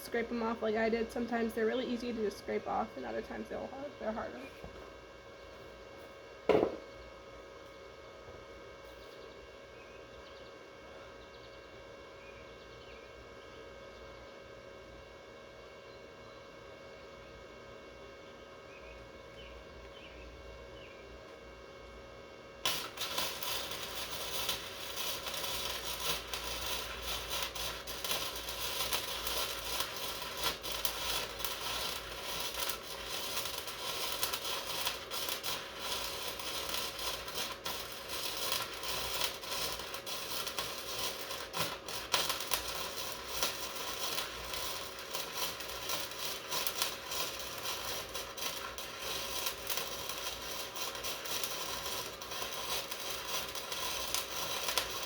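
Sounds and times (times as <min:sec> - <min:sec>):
welder arc crackling: 0:00.0 - 0:04.8, 0:22.6 - 0:55.0.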